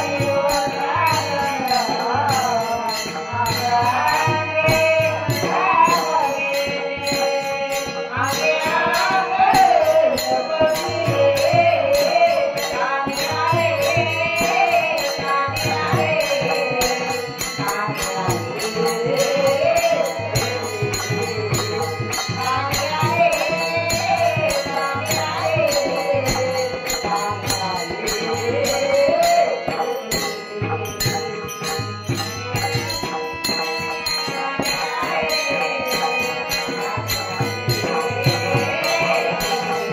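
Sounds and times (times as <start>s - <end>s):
small hand cymbals jingling: 0.0s - 39.9s
woman singing devotional song: 0.0s - 39.9s.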